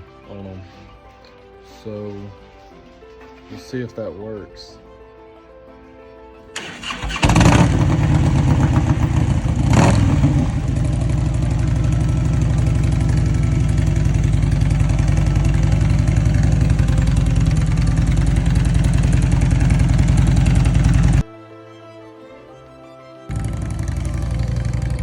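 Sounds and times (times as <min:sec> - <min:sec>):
motorcycle engine revving: 0:06.6 - 0:21.2, 0:23.3 - 0:25.0
motorcycle engine starting and idling: 0:06.6 - 0:21.2, 0:23.3 - 0:25.0.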